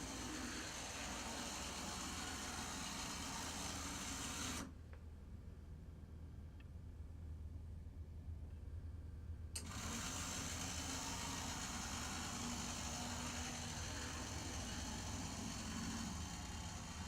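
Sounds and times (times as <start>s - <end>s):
model train motor whirring: 0.0s - 4.7s, 9.6s - 17.0s.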